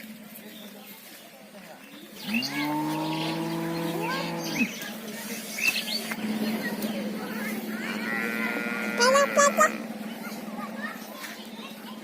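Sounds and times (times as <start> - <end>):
cow mooing: 7.8 - 9.8.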